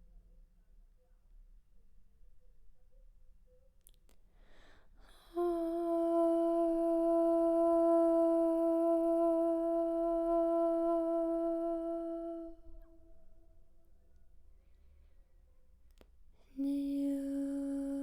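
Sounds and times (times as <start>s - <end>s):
woman breathing in: 4.3s - 5.1s
woman holding long sung note: 5.1s - 13.1s.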